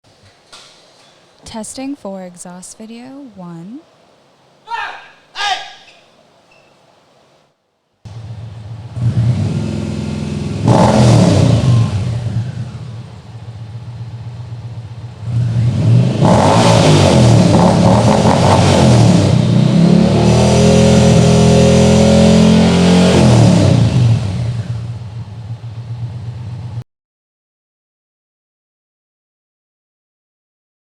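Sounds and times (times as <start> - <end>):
motorcycle engine idling and revving: 8.1 - 26.8.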